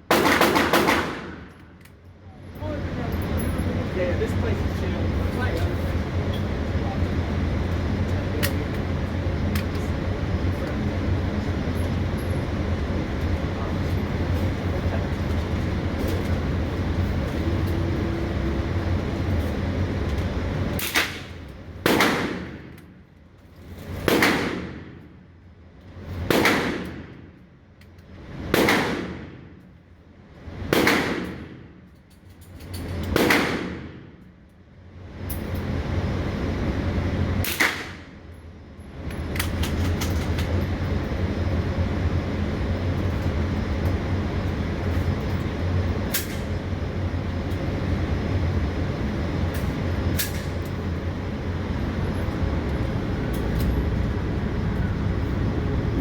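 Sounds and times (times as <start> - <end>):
gunshots: 0.1 - 1.5, 21.8 - 22.6, 24.0 - 24.9, 26.3 - 27.0, 28.6 - 29.3, 30.7 - 31.5, 33.2 - 34.0.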